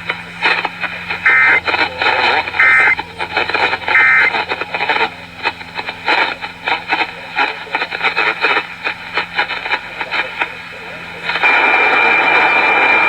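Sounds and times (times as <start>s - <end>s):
hissy radio audio: 0.0s - 12.6s
digital data tones: 1.3s - 1.7s, 2.6s - 3.0s, 3.9s - 4.3s.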